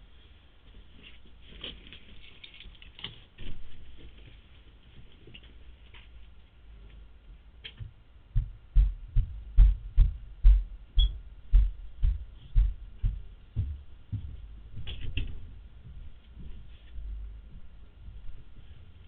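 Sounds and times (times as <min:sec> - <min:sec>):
footsteps on a floor: 0:08.4 - 0:18.8.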